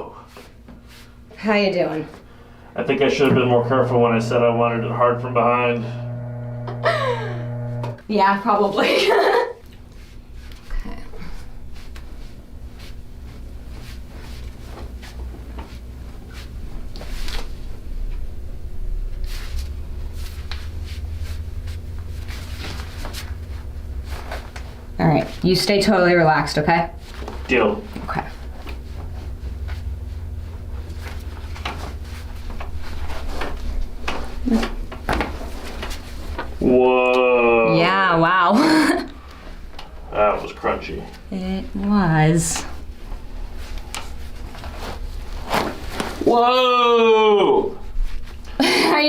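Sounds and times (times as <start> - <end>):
steady low hum: 1.0 - 46.3.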